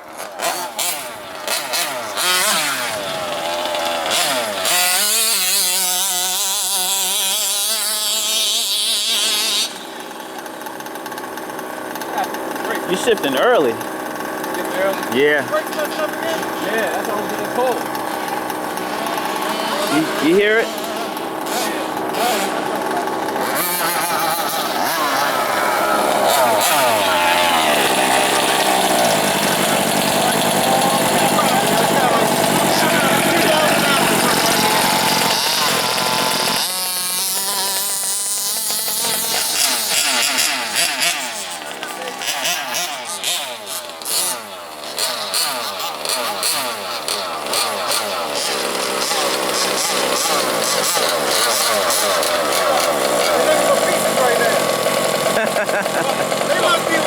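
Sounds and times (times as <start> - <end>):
small two-stroke engine revving: 0.0 - 57.0.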